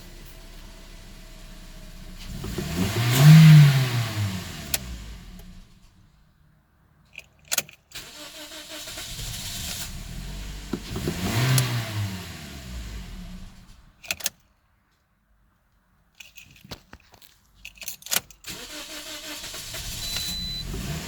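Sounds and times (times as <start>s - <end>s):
car engine revving: 0.0s - 6.0s, 8.2s - 13.9s, 18.6s - 21.0s.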